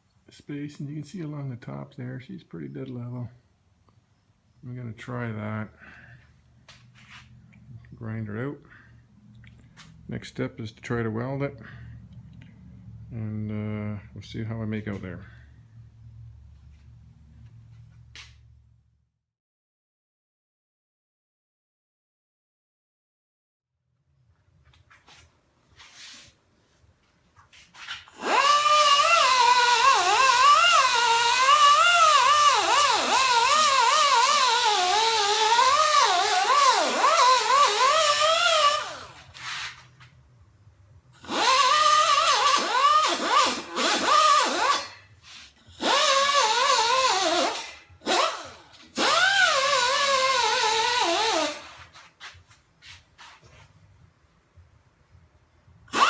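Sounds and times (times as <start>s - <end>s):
angle grinder grinding metal: 27.9s - 39.8s, 41.2s - 52.0s.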